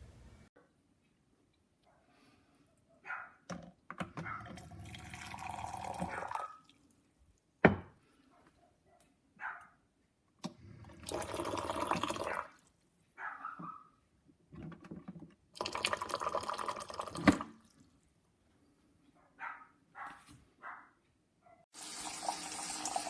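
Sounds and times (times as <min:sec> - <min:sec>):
water pouring: 0:04.4 - 0:07.0, 0:10.8 - 0:12.5, 0:15.6 - 0:17.9, 0:21.8 - 0:23.0.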